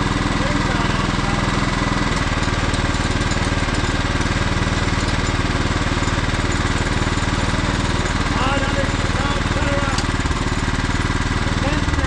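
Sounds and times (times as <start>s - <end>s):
lawn mower engine running: 0.0s - 12.0s.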